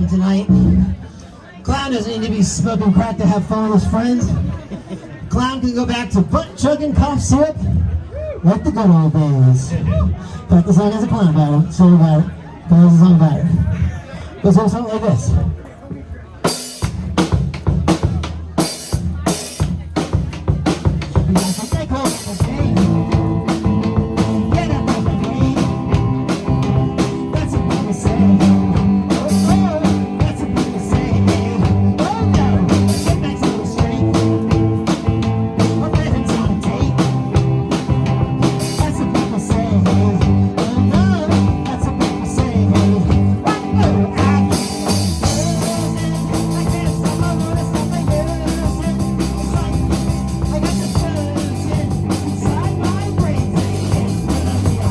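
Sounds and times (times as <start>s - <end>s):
drum kit beat: 16.4s - 54.9s
rock band playing live: 16.4s - 54.9s.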